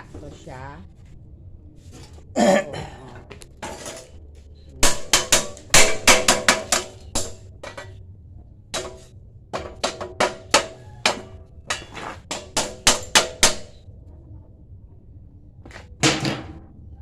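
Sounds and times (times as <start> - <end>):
hammer striking steel bar: 4.8 - 7.9, 8.8 - 13.8.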